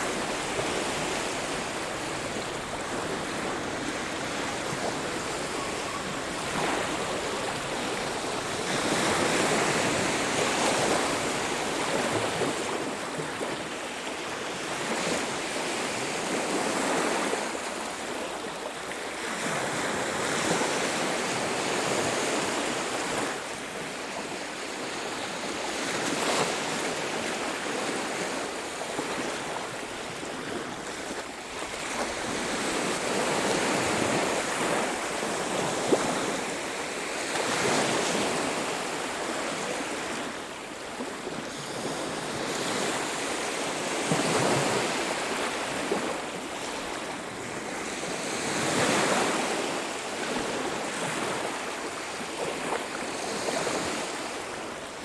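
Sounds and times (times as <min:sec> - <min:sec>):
ocean waves breaking: 0:00.0 - 0:13.6.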